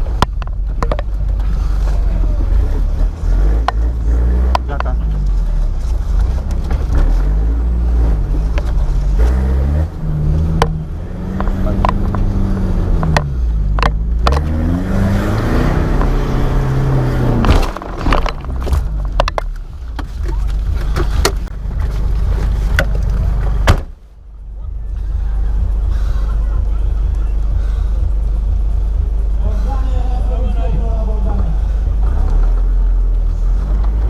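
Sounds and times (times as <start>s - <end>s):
vehicle knocks and clunks: 0.0s - 1.8s, 2.4s - 7.4s, 8.2s - 14.6s, 15.2s - 24.1s
engine revving under load: 1.3s - 19.4s, 31.2s - 34.0s.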